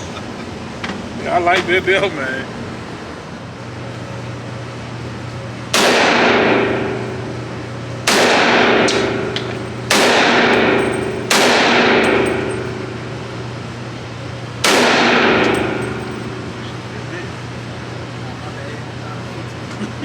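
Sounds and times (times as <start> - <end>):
gunshots: 5.7 - 7.0, 8.0 - 12.6, 14.6 - 16.0.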